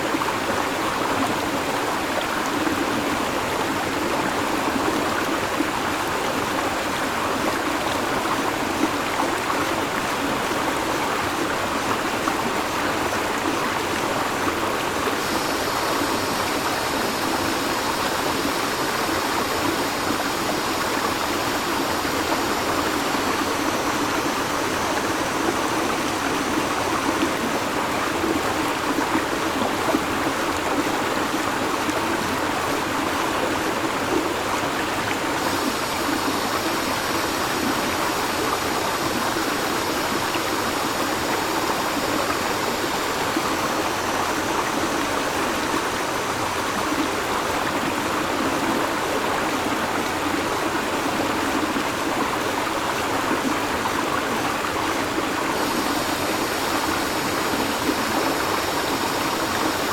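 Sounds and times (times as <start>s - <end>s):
river water rushing: 0.0s - 59.9s
cicadas buzzing: 11.4s - 30.8s, 34.7s - 50.4s, 54.0s - 59.9s.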